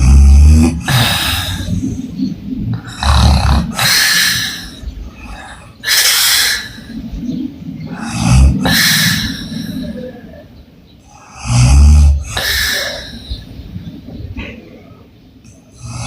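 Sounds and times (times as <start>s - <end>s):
woman snoring: 0.0s - 1.9s, 2.8s - 4.8s.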